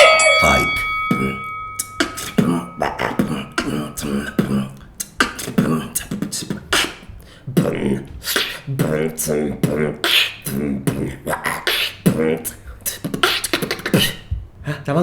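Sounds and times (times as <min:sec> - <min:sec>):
bell ring: 0:00.0 - 0:04.8
vocal beatbox sounds: 0:00.4 - 0:15.0.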